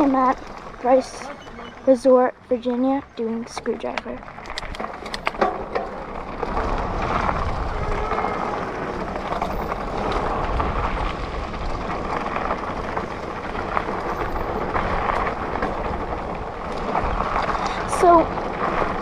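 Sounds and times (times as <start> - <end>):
tyres rumbling on dirt: 0.0 - 19.0
wind on microphone: 4.4 - 19.0.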